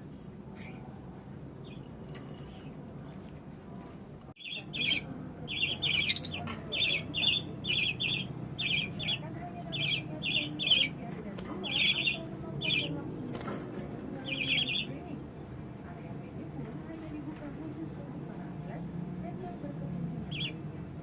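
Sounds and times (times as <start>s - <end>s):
baby budgerigars chirping: 0.6s - 0.8s, 4.4s - 15.6s, 20.1s - 21.0s.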